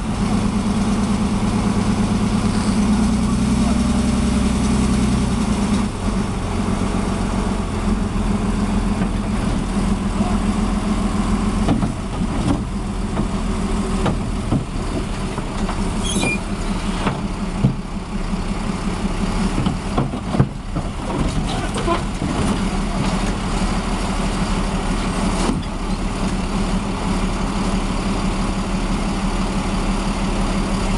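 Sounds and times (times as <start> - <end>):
heavy vehicle engine running: 0.0 - 30.9
knocks and clanks: 11.6 - 17.9, 19.5 - 23.4.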